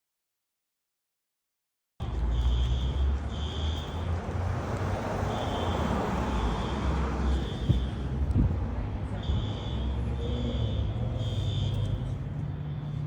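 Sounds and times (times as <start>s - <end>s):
distant fire alarm beeps: 2.3s - 4.0s, 5.2s - 8.0s, 9.2s - 12.0s.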